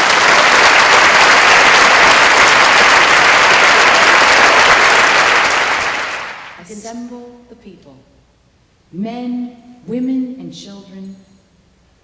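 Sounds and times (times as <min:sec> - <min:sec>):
audience applauding: 0:00.0 - 0:06.6.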